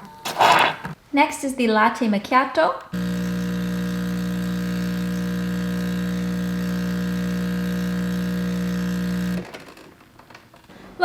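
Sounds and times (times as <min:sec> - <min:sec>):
espresso machine humming: 0:02.9 - 0:09.5.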